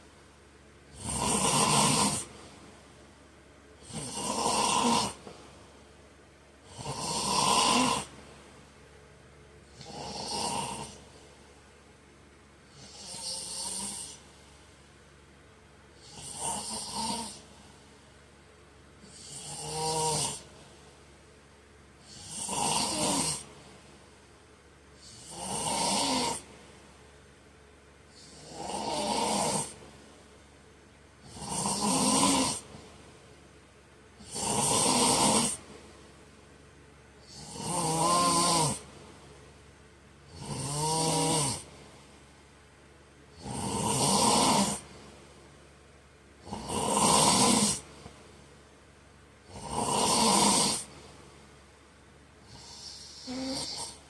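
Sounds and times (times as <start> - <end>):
man snoring: 0.9 - 2.4, 3.8 - 5.4, 6.6 - 8.2, 9.7 - 11.1, 12.7 - 14.3, 16.0 - 17.6, 19.0 - 20.5, 22.0 - 23.5, 25.0 - 26.5, 28.1 - 29.8, 31.2 - 32.8, 34.2 - 35.6, 37.2 - 38.9, 40.2 - 41.7, 43.3 - 44.9, 46.4 - 47.9, 49.4 - 50.9, 52.4 - 54.0.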